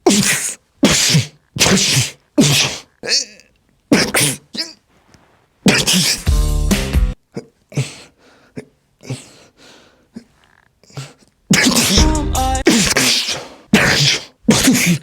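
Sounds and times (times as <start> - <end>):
person mock sneezing: 0.0 - 2.9, 3.9 - 4.8, 5.6 - 6.4, 10.9 - 15.0.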